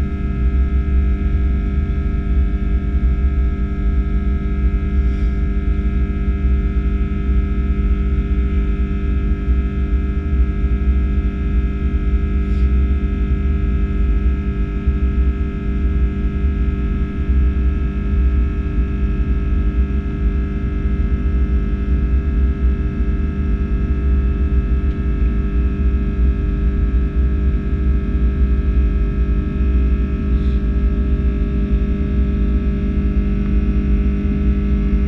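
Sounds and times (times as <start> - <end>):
jet engines low rumble: 0.0 - 35.0
steady engine whine: 0.0 - 35.0.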